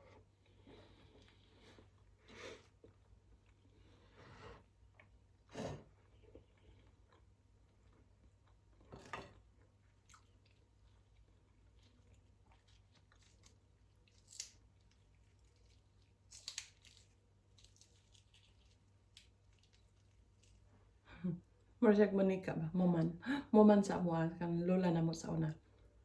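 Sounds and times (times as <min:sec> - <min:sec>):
person chewing: 0:04.9 - 0:20.7.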